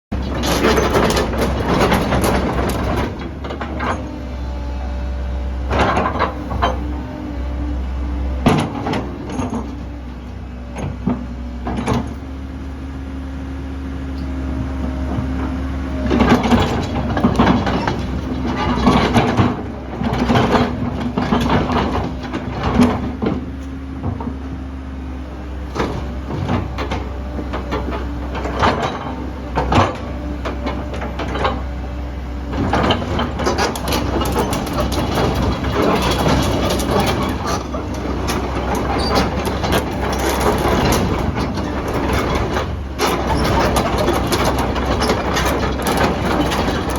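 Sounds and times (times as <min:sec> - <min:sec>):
excavator diesel engine running: 0:00.1 - 0:46.9
metallic clanks and knocks: 0:32.5 - 0:46.9.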